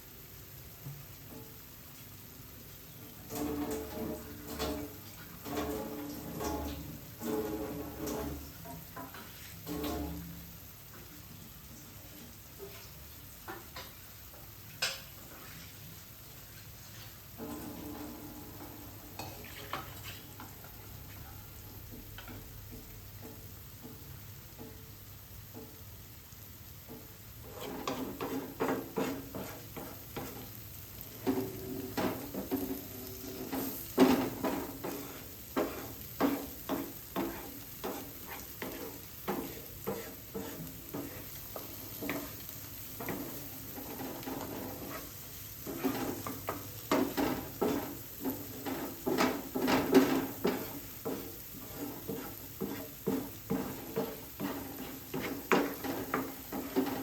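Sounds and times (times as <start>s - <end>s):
curry sizzling: 0.0s - 57.0s
utensil scraping a pan: 3.1s - 10.5s, 16.5s - 21.3s, 26.9s - 57.0s.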